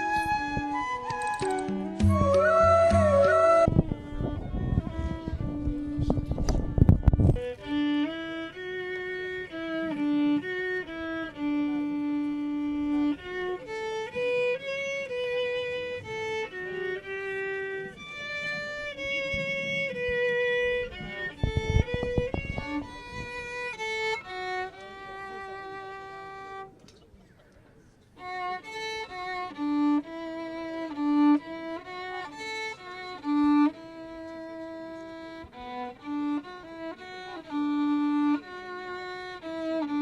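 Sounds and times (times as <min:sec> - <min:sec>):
low bumps of noise: 0:00.0 - 0:09.7, 0:17.0 - 0:27.9
solo violin melody: 0:00.0 - 0:26.8, 0:28.1 - 0:40.0.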